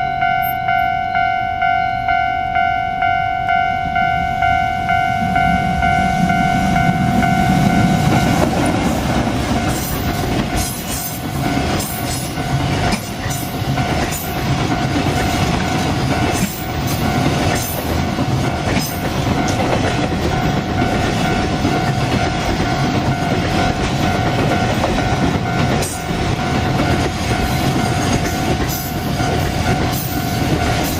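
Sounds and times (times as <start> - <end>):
crossing warning bell ringing: 0.0 - 30.9
train wheels clicking over rail joints: 7.1 - 30.9.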